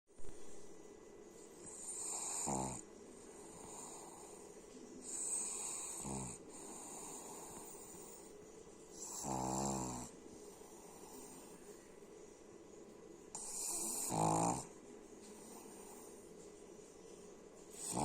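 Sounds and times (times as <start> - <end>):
person snoring: 1.8 - 2.8, 5.0 - 7.9, 9.0 - 10.1, 13.4 - 14.7, 17.8 - 18.0.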